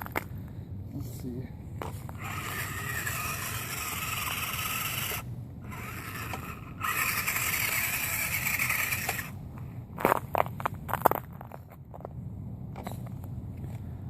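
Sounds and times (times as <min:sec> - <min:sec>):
small electric motor whining: 0:02.1 - 0:09.4.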